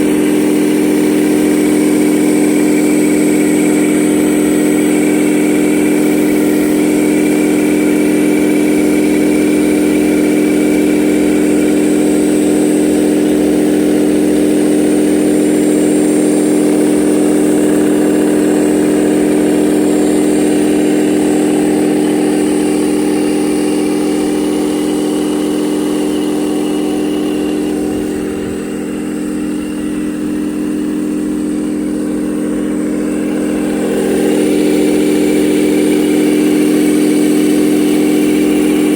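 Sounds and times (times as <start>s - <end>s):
hydraulic model engine-like hum: 0.0s - 38.9s.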